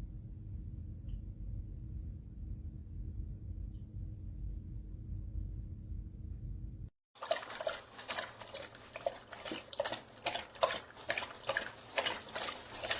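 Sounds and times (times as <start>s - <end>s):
low hum: 0.0s - 6.9s
dog lapping water: 7.2s - 12.9s.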